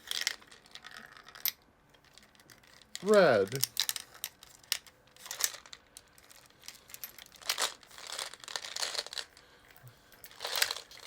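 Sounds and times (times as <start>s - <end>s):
crinkling and rustling: 0.0s - 11.0s.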